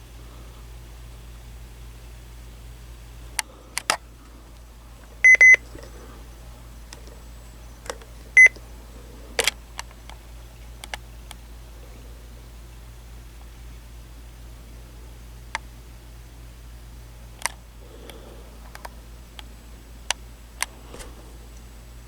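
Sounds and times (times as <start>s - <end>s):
low electrical hum: 0.0s - 22.0s
sharp clicks: 3.3s - 4.7s, 9.4s - 11.4s, 17.4s - 19.5s
high-pitched electronic beeps: 5.2s - 5.6s.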